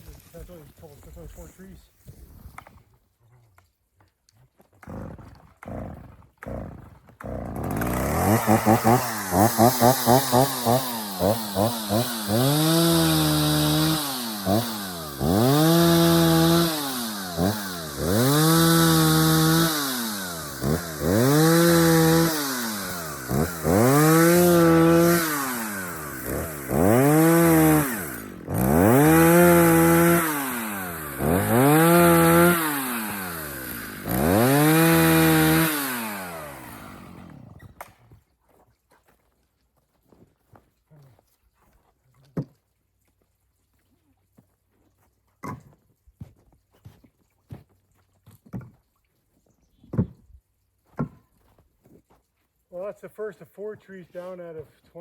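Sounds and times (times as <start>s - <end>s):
chainsaw engine revving: 4.8s - 37.8s.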